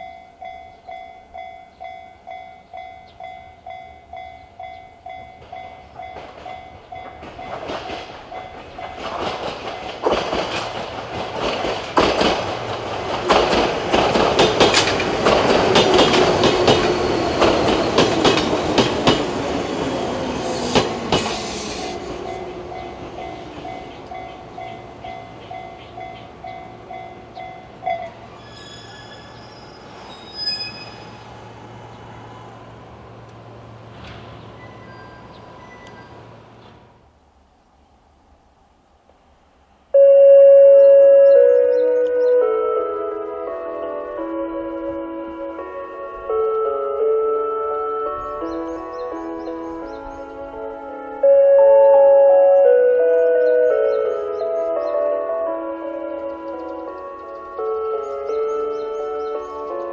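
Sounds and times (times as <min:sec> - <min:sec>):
train wheels clattering: 0:05.2 - 0:29.1
level crossing alarm ringing: 0:21.0 - 0:29.4, 0:40.0 - 0:59.9.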